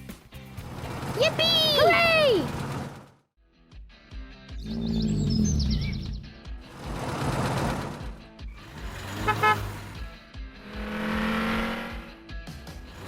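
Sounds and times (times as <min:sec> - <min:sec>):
background music: 0:00.0 - 0:13.0
cartoon engine hum: 0:04.6 - 0:10.0.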